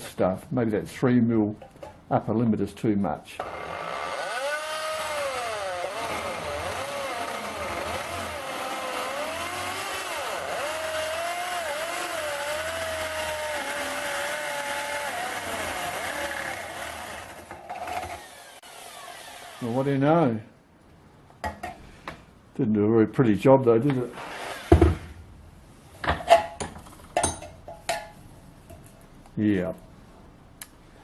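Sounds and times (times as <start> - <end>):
electric drill motor whine: 3.4 - 19.6
noisy drill gearbox: 3.4 - 19.7.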